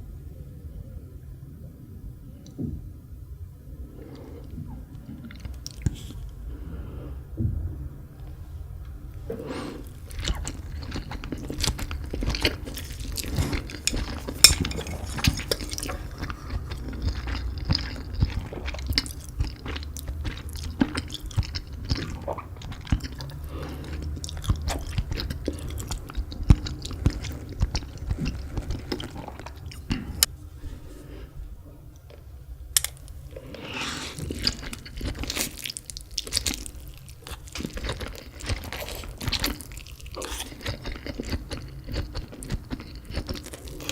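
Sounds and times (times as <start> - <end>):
wet chewing and smacking: 9.8 - 30.3, 32.8 - 43.9.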